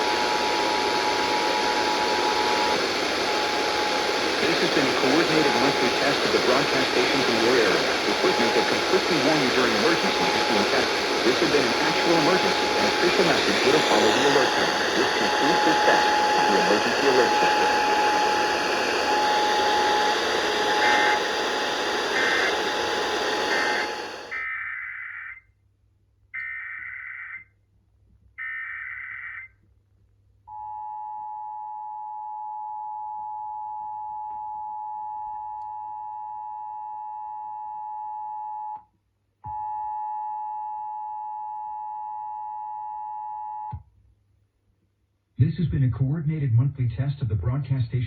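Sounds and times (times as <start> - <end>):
loud static with steady tone: 0.0 - 24.4
screeching data bursts: 0.0 - 24.4.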